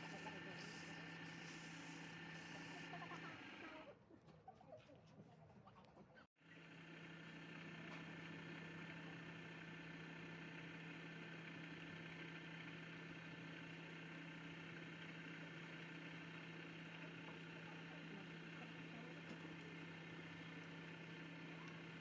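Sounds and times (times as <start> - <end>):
wood lathe motor humming: 0.0 - 3.6.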